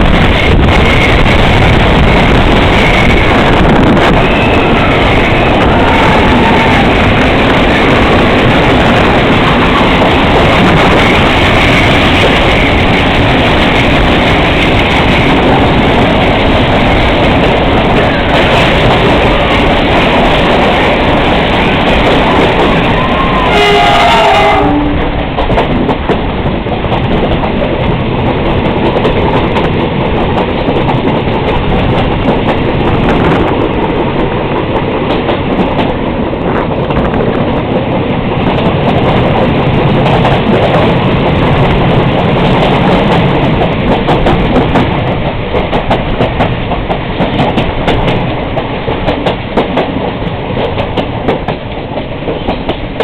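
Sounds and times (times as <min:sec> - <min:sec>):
train rumbling on rails: 0:00.0 - 0:53.0
locomotive horn: 0:03.1 - 0:07.0, 0:22.9 - 0:25.2.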